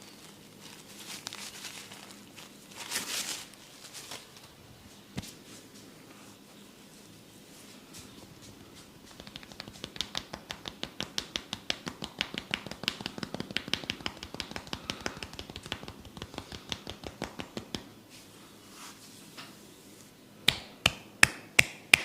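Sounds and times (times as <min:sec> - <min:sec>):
rapid tapping of head massage: 0:08.5 - 0:18.0.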